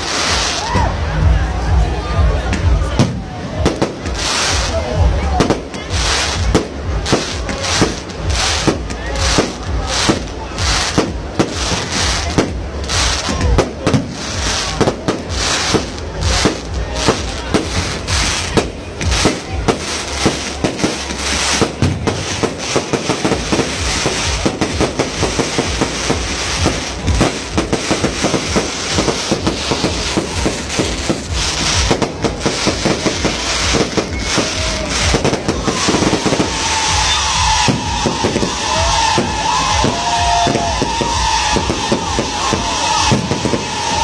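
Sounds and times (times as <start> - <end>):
fireworks bangs and crackles: 0.0 - 44.0.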